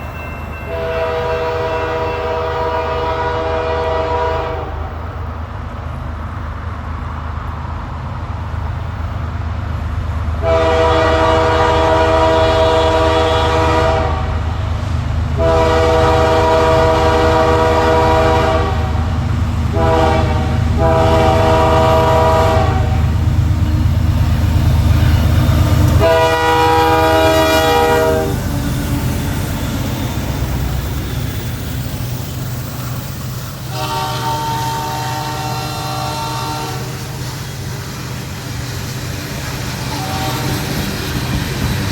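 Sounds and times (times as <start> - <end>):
diesel locomotive rumble: 0.0 - 41.9
locomotive air horn blasts: 0.7 - 5.0, 10.4 - 14.4, 15.4 - 23.8, 24.9 - 28.5, 33.7 - 37.2, 39.9 - 40.7.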